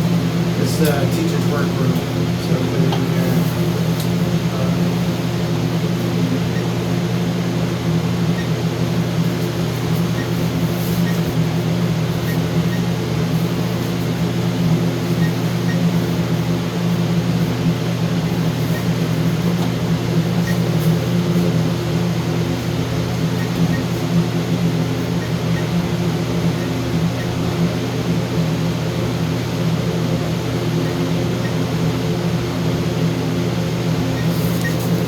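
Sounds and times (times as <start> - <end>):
low mechanical hum: 0.0 - 35.0.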